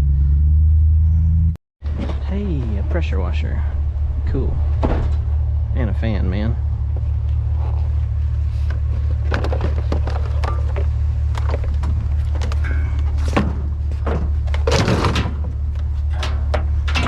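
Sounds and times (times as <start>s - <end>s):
truck engine idling: 0.0s - 17.0s
scrap metal clattering: 9.0s - 17.0s.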